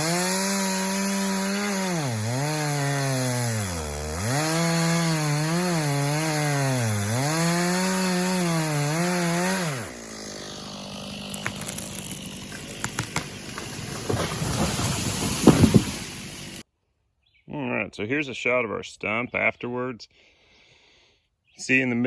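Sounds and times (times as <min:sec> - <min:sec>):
chainsaw cutting wood: 0:00.0 - 0:16.6
wood cracking and snapping: 0:07.0 - 0:16.6.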